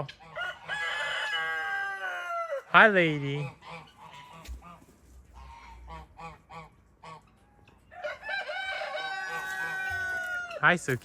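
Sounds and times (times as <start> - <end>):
rooster crowing: 0.3 - 2.7, 7.9 - 10.7
chicken clucking: 3.4 - 11.0.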